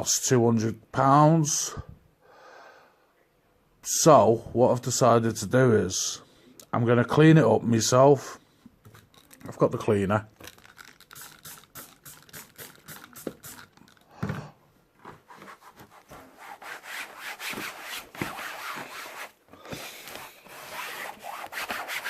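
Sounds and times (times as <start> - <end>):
thump: 14.2 - 14.6
hand rubbing a surface: 15.0 - 22.0.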